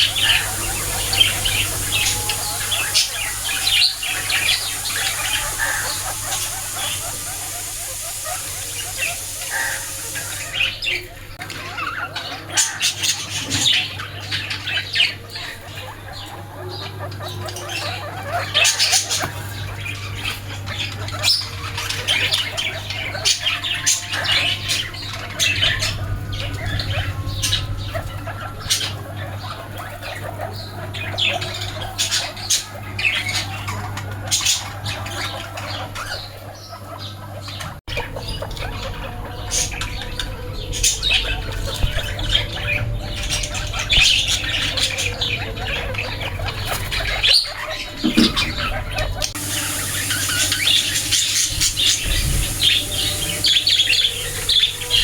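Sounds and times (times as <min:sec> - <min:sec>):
steady low hum: 0:00.0 - 0:11.5
small animals squeaking: 0:00.0 - 0:55.0.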